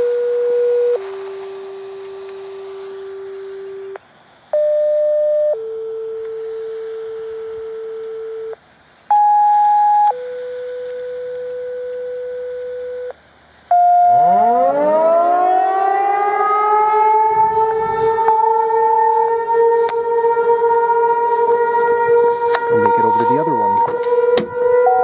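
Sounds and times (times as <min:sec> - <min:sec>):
electronic tones: 0:00.0 - 0:04.0, 0:04.6 - 0:25.0
tornado sirens wailing: 0:00.0 - 0:04.0, 0:13.7 - 0:25.0.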